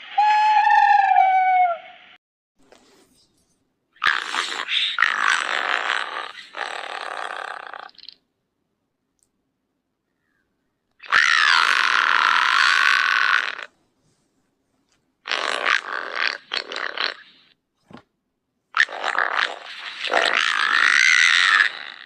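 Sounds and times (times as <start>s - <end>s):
creature cries: 11.0s - 13.7s, 18.8s - 22.0s.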